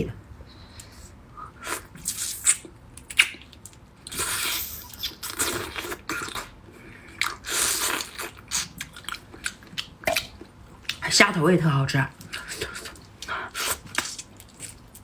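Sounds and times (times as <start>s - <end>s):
wet chewing: 12.2s - 15.0s.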